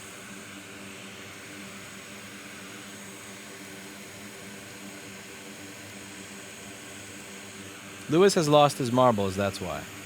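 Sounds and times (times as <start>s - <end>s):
fan blowing air: 5.9s - 10.0s.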